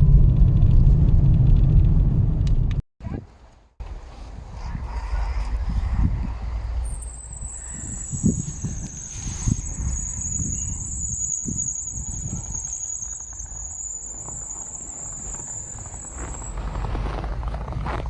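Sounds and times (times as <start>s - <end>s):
wind buffeting microphone: 0.0s - 18.0s
high-pitched whistle: 7.0s - 16.6s.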